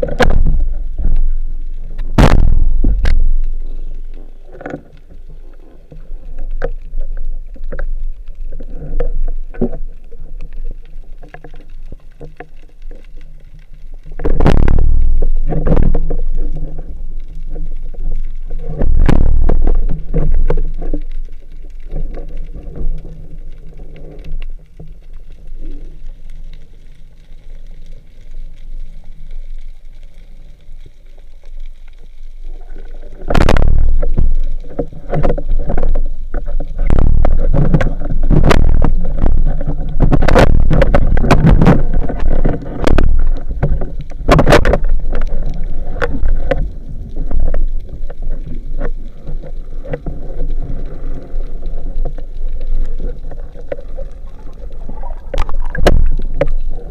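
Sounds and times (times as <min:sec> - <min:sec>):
knocks and thumps: 0:02.1 - 0:03.2, 0:14.2 - 0:15.0, 0:33.3 - 0:34.2
water sloshing: 0:32.5 - 0:56.9.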